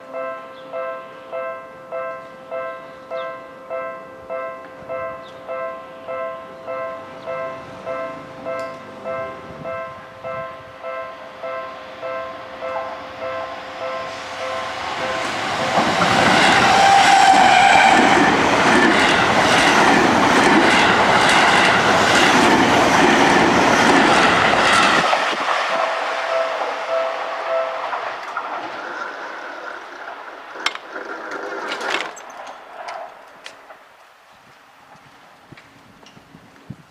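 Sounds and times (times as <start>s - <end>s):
electric train passing at speed: 1.0s - 36.9s
train wheels clattering over rail joints: 15.1s - 25.9s, 27.8s - 33.8s
level crossing alarm bells ringing: 25.7s - 28.0s.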